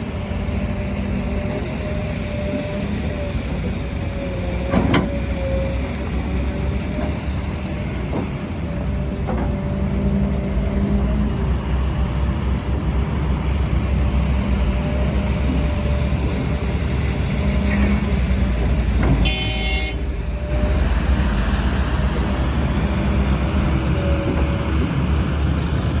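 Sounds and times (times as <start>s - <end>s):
diesel machinery rumbling: 0.0s - 26.0s
short horn toot: 19.2s - 20.0s.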